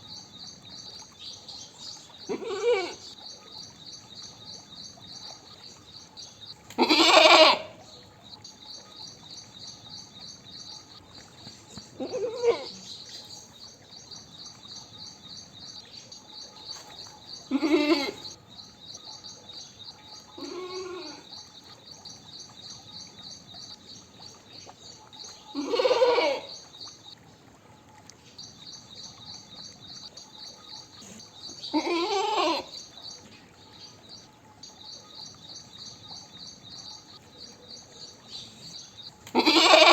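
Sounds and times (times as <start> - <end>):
goat bleating: 2.3 - 3.0, 6.8 - 7.7, 12.0 - 12.8, 17.5 - 18.2, 20.4 - 21.2, 25.6 - 26.5, 31.7 - 32.7, 39.3 - 39.9.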